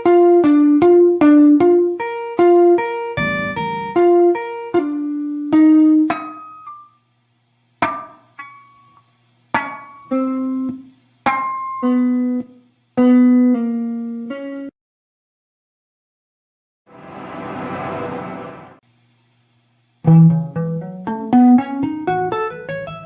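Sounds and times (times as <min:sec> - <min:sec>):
guitar notes plucked: 0:00.0 - 0:06.9, 0:07.8 - 0:14.7, 0:20.1 - 0:23.0.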